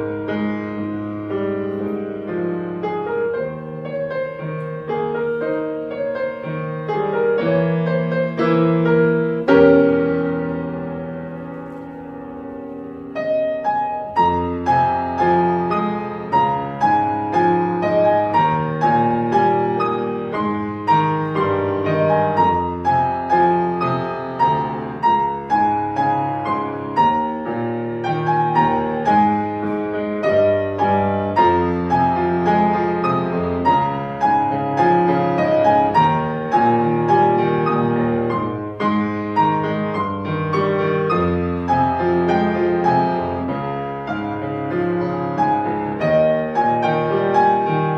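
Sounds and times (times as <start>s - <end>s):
solo piano melody: 0.0s - 47.9s.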